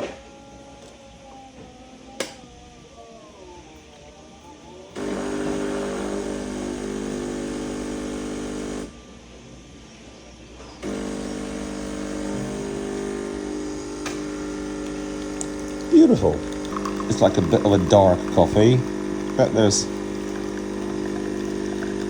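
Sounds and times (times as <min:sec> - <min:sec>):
coffee machine pump buzzing: 0:05.0 - 0:09.0, 0:10.8 - 0:22.0.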